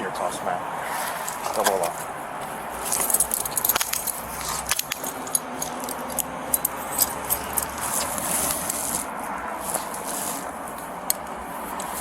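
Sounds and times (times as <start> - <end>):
handcuffs clicking and jangling: 2.8 - 12.0.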